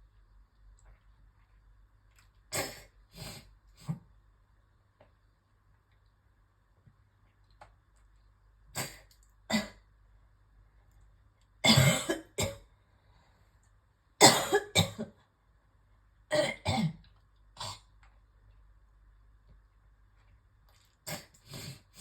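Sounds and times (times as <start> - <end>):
woman coughing: 11.7 - 12.6, 14.2 - 15.1.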